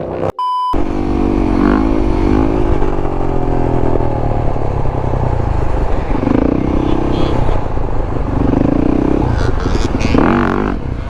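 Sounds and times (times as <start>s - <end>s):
short electronic beep: 0.4s - 0.8s
dirt bike engine running: 0.8s - 11.0s.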